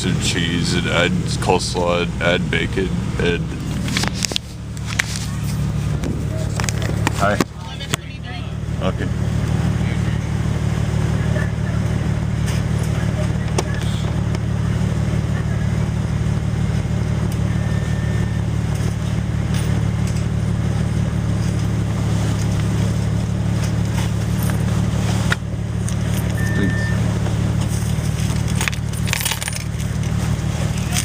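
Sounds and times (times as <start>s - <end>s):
car engine idling: 0.0s - 31.0s
short high beeps: 26.3s - 27.1s.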